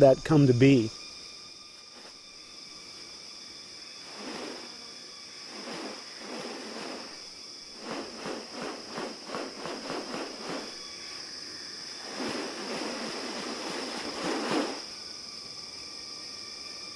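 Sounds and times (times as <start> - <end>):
high-pitched insect drone: 0.0 - 16.9
rough noisy pulses: 4.0 - 11.2, 12.0 - 14.9.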